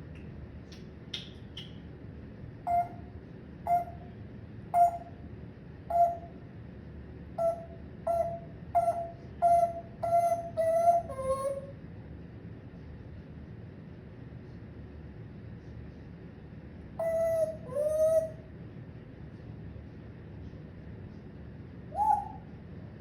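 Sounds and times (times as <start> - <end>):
parrot whistling: 2.7 - 3.1, 3.7 - 4.1, 4.8 - 5.2, 5.9 - 6.3, 7.4 - 11.7, 17.0 - 18.4, 21.9 - 22.5.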